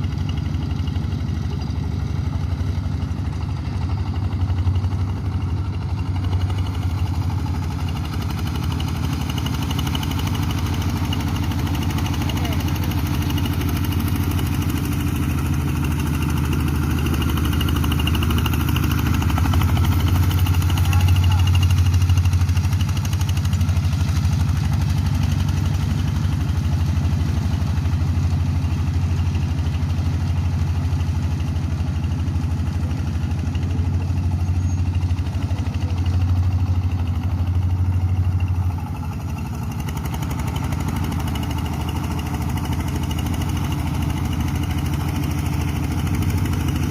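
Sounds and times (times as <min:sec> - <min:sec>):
small engine running: 0:00.0 - 0:46.9.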